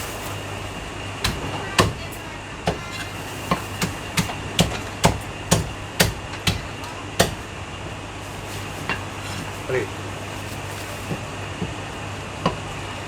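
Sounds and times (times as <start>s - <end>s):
steady low hum: 0.0s - 13.0s
cleaver chopping on block: 1.2s - 2.1s, 2.7s - 7.5s.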